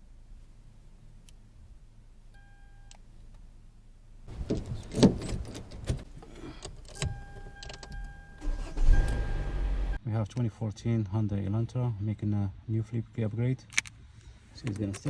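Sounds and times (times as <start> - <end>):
keys and car parts clicking: 4.4 - 8.4
electronic beep tone: 7.0 - 10.0.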